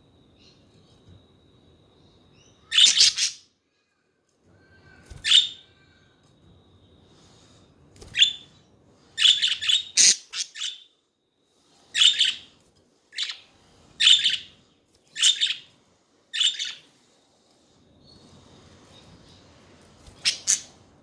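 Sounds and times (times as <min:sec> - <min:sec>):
budgerigars chirping: 0:02.6 - 0:03.4, 0:09.2 - 0:10.8, 0:15.2 - 0:15.6, 0:16.4 - 0:16.8, 0:20.2 - 0:20.7.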